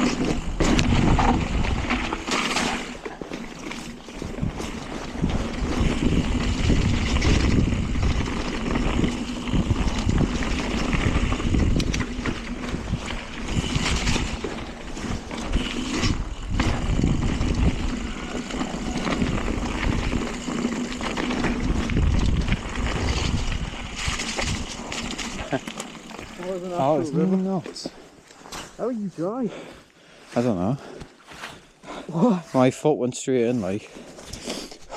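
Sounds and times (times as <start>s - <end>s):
bike rumbling and rattling: 0.0s - 28.8s
wind buffeting microphone: 4.1s - 25.5s.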